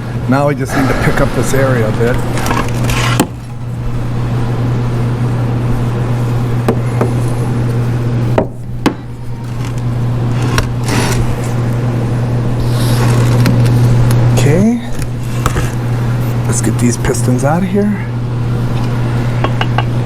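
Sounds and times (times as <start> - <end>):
steady low hum: 0.0 - 20.0
tool scraping: 0.4 - 3.6, 9.4 - 11.6
hand tools tapping on metal: 19.4 - 19.9.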